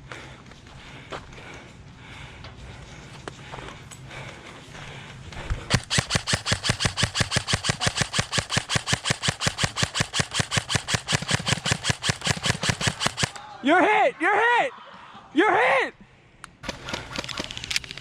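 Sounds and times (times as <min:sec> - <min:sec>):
airsoft rifle firing full auto: 0:05.7 - 0:13.4.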